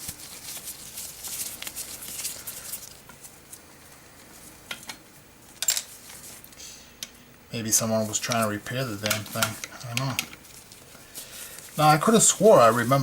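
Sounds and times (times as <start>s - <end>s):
rustling: 0.0s - 6.6s, 7.9s - 13.0s.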